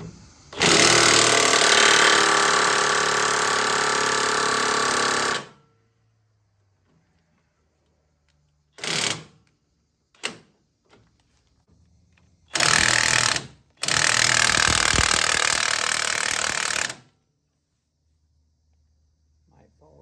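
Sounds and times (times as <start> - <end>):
air impact tool hammering: 0.6 - 5.6, 12.5 - 17.0.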